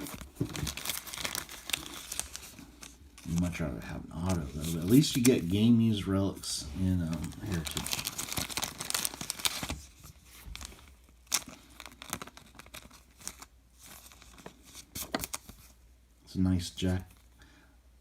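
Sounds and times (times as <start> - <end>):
cards clicking and rustling: 0.0 - 3.6, 4.2 - 5.7, 7.0 - 15.7
plastic wrapper crinkling and tearing: 0.0 - 15.7.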